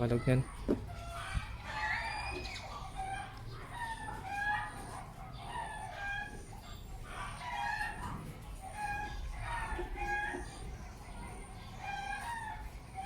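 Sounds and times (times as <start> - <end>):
chickens clucking: 0.0 - 13.0.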